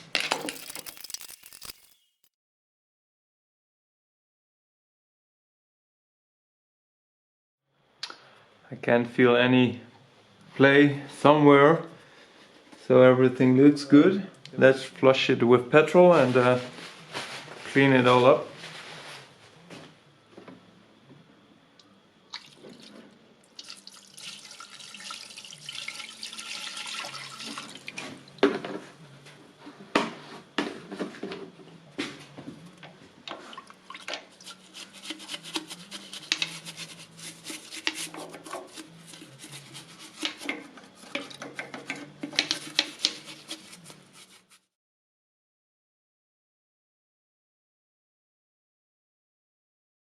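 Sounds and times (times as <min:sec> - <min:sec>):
liquid pouring: 0:22.4 - 0:27.9.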